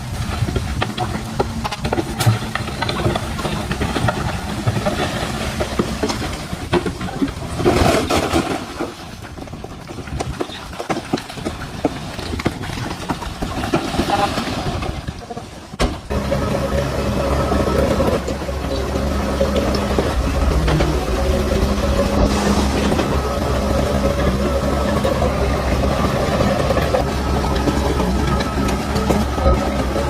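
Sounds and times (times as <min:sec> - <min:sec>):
clanks and knocks of stones: 0:00.0 - 0:16.2
bulldozer diesel engine: 0:00.0 - 0:30.0.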